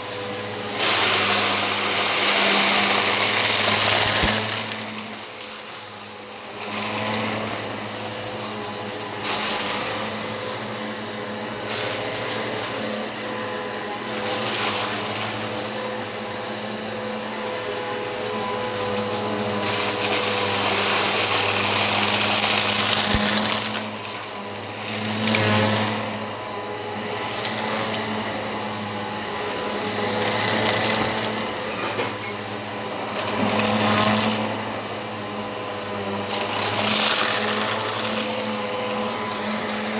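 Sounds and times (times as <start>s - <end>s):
vacuum cleaner motor hum: 0.0s - 39.9s.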